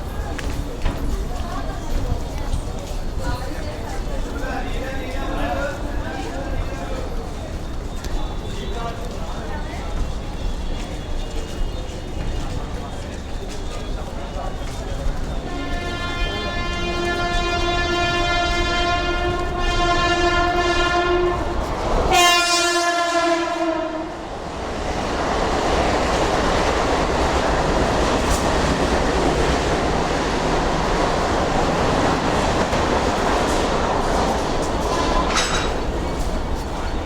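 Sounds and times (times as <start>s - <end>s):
train carriages rushing past: 0.0s - 37.0s
train horn blowing: 15.4s - 24.3s.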